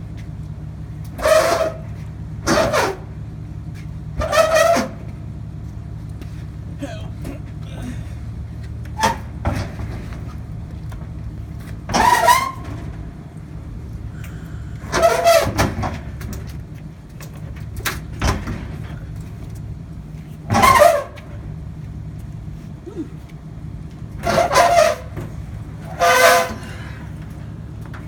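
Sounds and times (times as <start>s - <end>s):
steady low hum: 0.0s - 28.0s
short screeching bursts: 25.8s - 27.0s.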